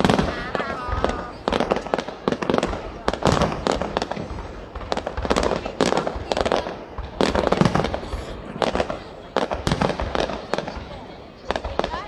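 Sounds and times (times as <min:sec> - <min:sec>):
fireworks bangs with echoing rumble: 0:00.0 - 0:12.0.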